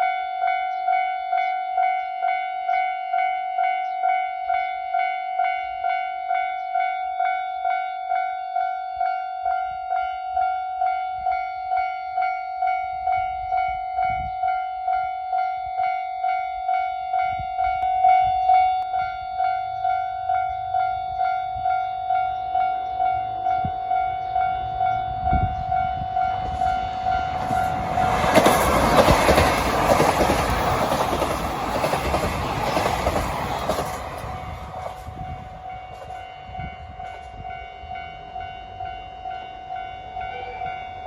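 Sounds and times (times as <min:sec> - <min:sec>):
level crossing warning bell: 0:00.0 - 0:41.0
approaching train rumble: 0:17.1 - 0:41.0.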